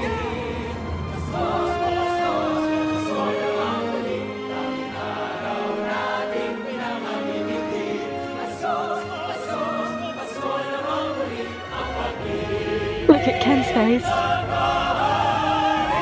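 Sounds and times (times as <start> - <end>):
choir singing: 0.0 - 16.0
musical accompaniment: 0.0 - 16.0.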